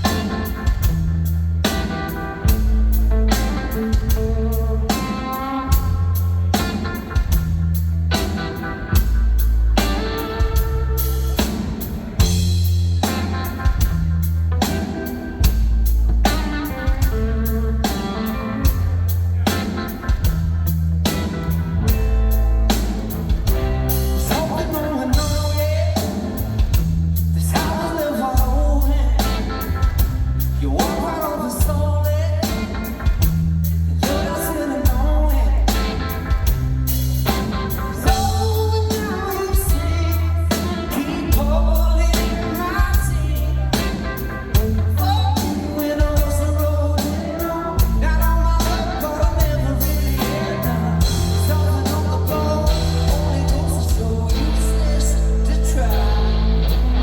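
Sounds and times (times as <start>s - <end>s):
distorted electric guitar: 0.0s - 57.0s
pounding drum kit: 0.0s - 57.0s
man singing: 3.3s - 7.3s, 23.9s - 57.0s.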